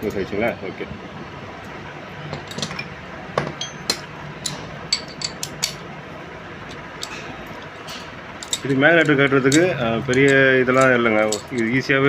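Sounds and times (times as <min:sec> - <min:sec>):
metal hand tools clinking: 0:03.5 - 0:05.9, 0:07.8 - 0:11.9.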